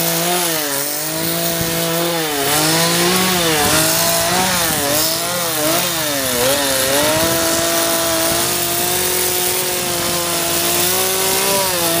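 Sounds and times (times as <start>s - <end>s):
chainsaw carving wood: 0.0s - 12.0s.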